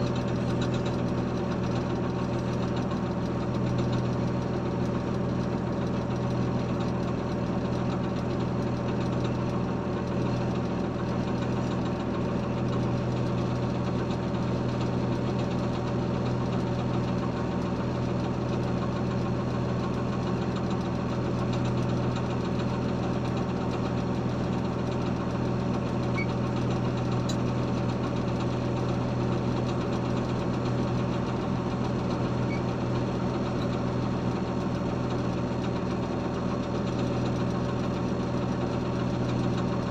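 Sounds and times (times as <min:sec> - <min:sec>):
diesel engine humming: 0:19.4 - 0:39.8.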